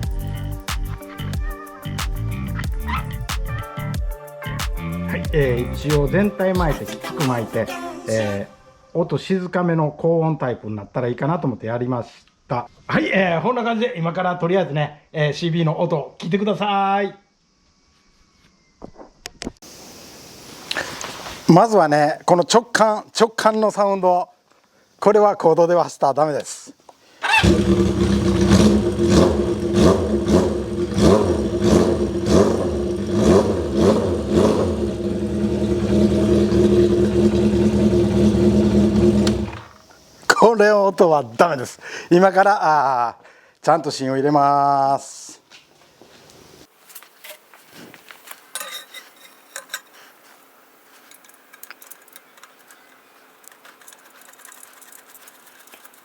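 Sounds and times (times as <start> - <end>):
motorcycle engine idling: 27.3 - 39.8
motorcycle engine revving: 27.3 - 39.8
metal clinking and knocking: 51.1 - 56.0.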